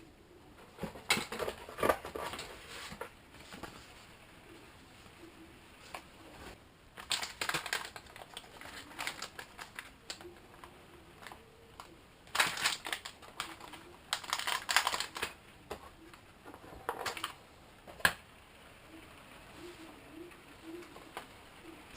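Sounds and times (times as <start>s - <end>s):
packaging crackling and rustling: 6.9s - 15.4s, 16.7s - 17.4s.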